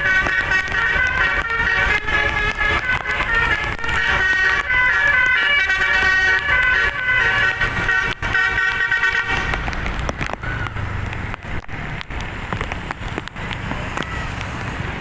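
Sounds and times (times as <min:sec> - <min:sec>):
bus musical air horn: 0:00.0 - 0:09.8
scattered clicks: 0:00.1 - 0:08.8, 0:09.4 - 0:14.8.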